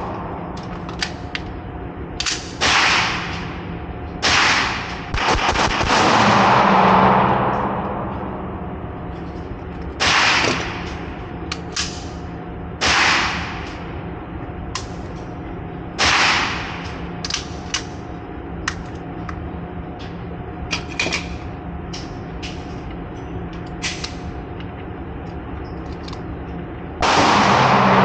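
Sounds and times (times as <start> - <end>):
fainter sharper gunshots: 4.2 - 7.4, 27.0 - 28.0
loud handgun shots: 4.2 - 8.1, 10.0 - 10.9, 12.8 - 13.6, 27.0 - 28.0.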